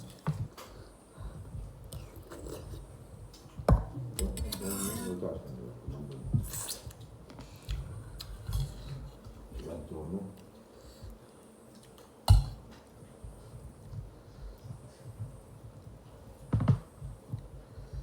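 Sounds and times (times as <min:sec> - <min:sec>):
cutlery clinking and scraping plate: 0:04.2 - 0:05.2.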